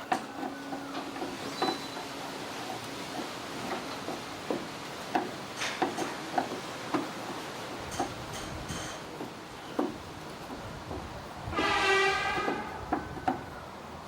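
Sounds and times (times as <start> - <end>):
light clicks and knocks: 0.0 - 11.1.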